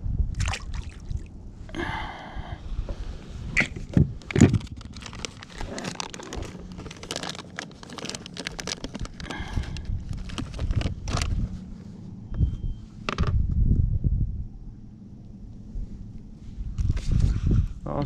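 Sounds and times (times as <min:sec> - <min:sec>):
handling crackling and scraping: 0:02.9 - 0:13.4.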